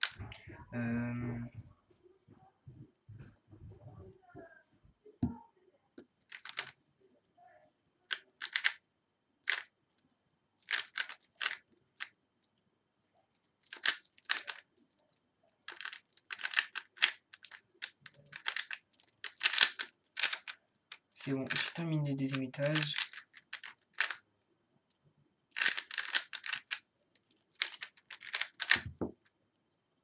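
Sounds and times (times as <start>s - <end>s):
puzzle cube clicking: 6.3s - 6.8s, 8.1s - 8.8s, 9.4s - 12.1s, 13.4s - 24.2s, 25.5s - 29.0s.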